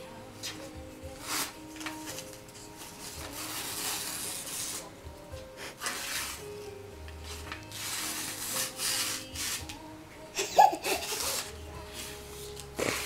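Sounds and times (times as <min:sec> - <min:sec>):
paper tearing: 0:01.1 - 0:04.9, 0:05.7 - 0:06.5, 0:07.2 - 0:09.8, 0:10.9 - 0:13.0.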